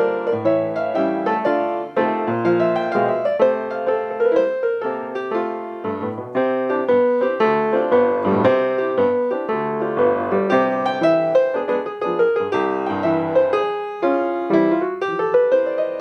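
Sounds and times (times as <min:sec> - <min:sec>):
solo piano playing: 0:00.0 - 0:16.0.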